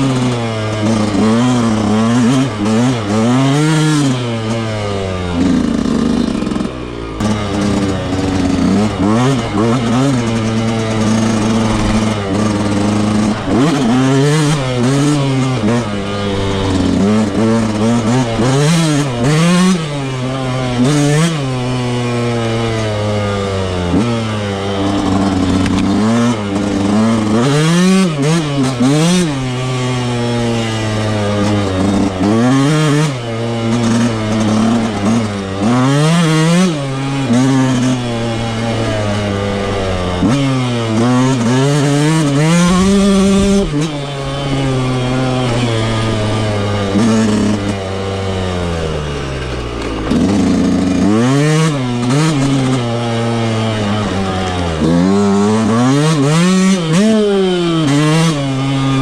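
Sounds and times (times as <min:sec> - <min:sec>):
two-stroke motorcycle engine revving: 0:00.0 - 0:59.0.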